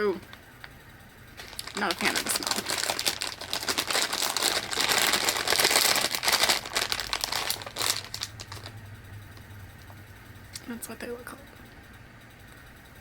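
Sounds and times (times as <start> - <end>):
snack package crinkling: 1.4 - 8.8.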